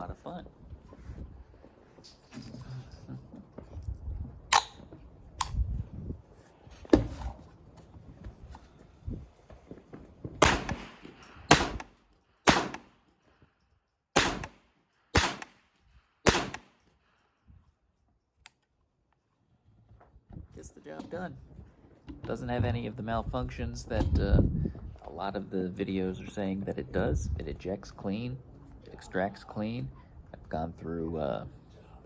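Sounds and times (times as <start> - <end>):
pistol gunshots: 10.4 - 13.0, 14.2 - 16.8.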